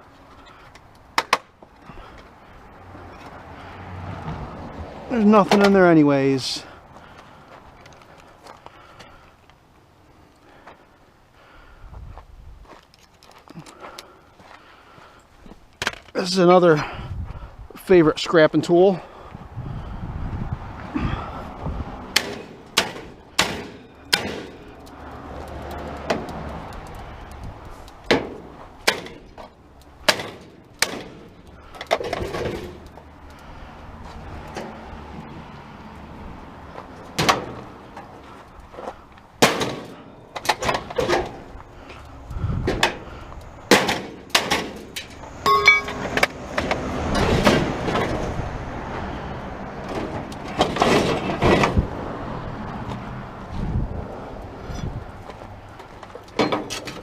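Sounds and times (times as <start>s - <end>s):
metal scraping: 44.8s - 47.6s
struck metal ringing: 45.4s - 46.3s.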